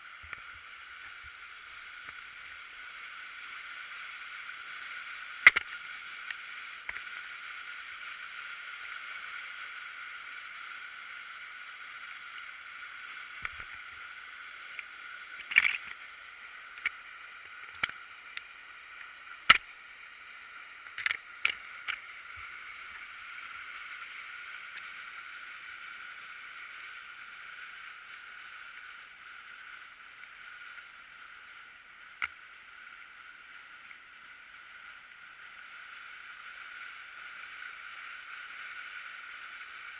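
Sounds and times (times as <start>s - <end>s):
water pouring over a weir: 15.3s - 16.1s.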